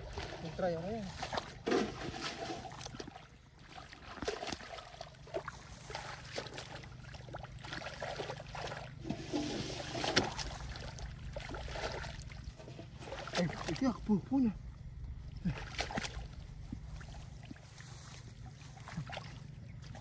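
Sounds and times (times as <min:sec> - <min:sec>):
muddy water splashing: 0:00.0 - 0:20.0
steady low rumble: 0:10.2 - 0:20.0.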